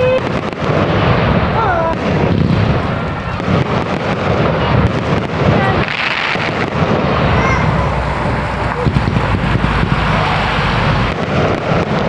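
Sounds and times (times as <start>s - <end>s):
fireworks crackling: 0.0s - 12.0s
low rumble: 6.4s - 12.0s.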